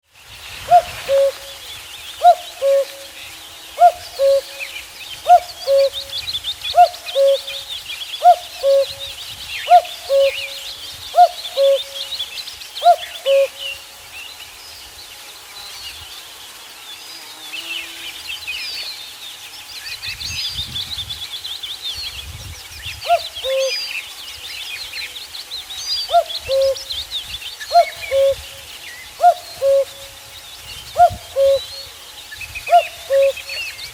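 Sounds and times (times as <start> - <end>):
songbirds twittering: 0.0 - 33.9
cuckoo calling: 0.7 - 13.8, 23.0 - 23.9, 26.0 - 30.3, 30.9 - 33.9.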